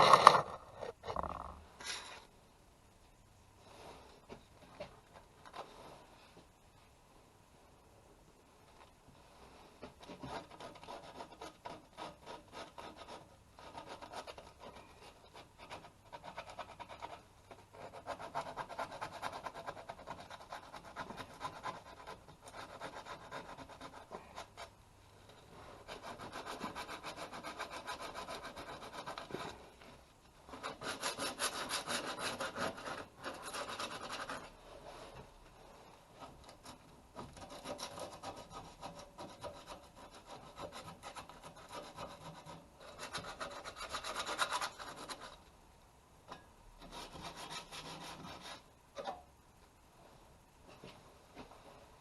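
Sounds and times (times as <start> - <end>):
hand sanding metal: 25.8 - 29.4, 30.5 - 34.5, 37.4 - 45.3.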